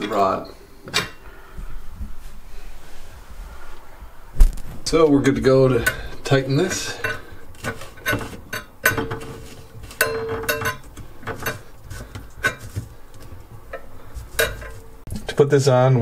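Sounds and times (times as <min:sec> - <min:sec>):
metallic clinks of drain parts: 0:08.0 - 0:09.3, 0:10.0 - 0:11.7, 0:14.4 - 0:14.8.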